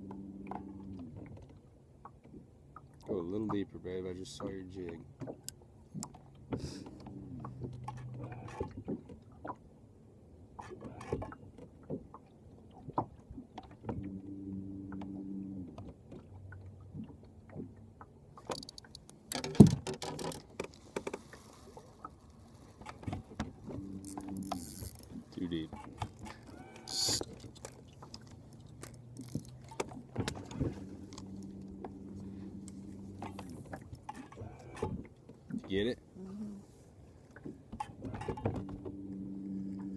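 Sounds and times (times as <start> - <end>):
low motor hum: 0.0 - 1.7, 3.1 - 8.9, 13.7 - 19.3, 21.7 - 36.8, 37.4 - 39.9
knocks and clicks on boat: 0.0 - 9.8, 10.4 - 36.1, 37.2 - 39.9.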